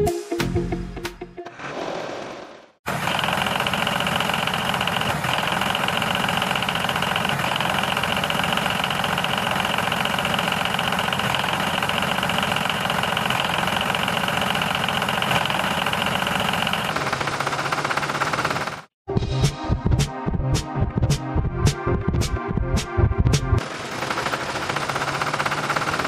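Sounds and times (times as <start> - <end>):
motor running steadily: 2.9 - 18.9, 23.6 - 26.0.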